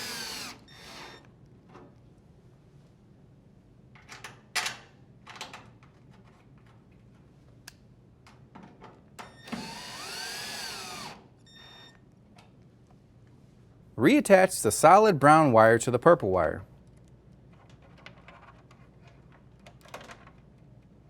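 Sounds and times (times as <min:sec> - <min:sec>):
cordless drill driving a screw: 0:00.0 - 0:01.3, 0:09.4 - 0:11.2.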